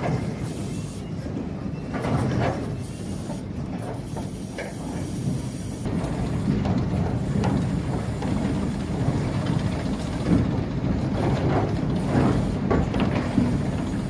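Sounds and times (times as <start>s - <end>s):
machinery low rumble: 5.9s - 14.0s.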